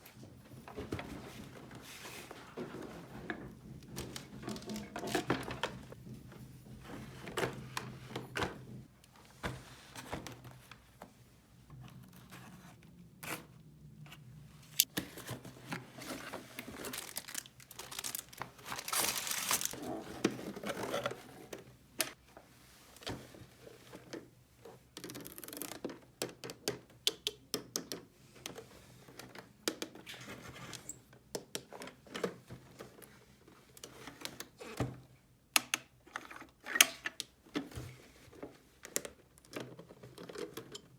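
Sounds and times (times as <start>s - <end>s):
packaging tearing and crinkling: 16.6s - 19.8s.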